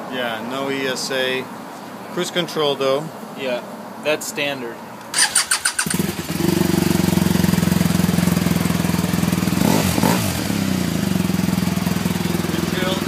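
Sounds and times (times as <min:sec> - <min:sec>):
motorcycle starter cranking: 0:05.1 - 0:06.4
motorcycle engine idling: 0:05.6 - 0:13.0.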